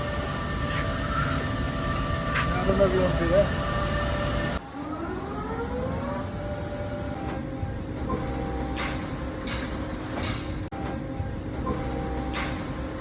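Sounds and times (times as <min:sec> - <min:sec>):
lathe spindle whining: 0:00.0 - 0:04.6.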